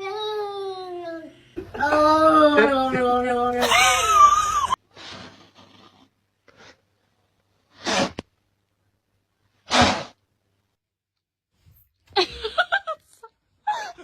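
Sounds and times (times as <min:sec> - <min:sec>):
cat sneezing: 0:07.8 - 0:08.2, 0:09.7 - 0:10.2.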